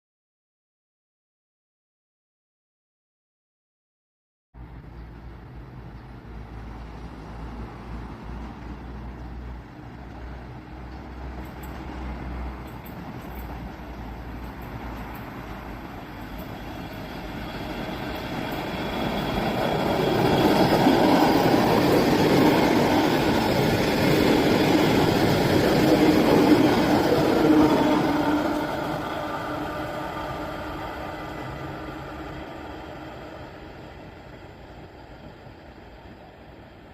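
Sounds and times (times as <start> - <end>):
electric train passing: 4.6 - 36.9
steady tones: 14.6 - 34.4.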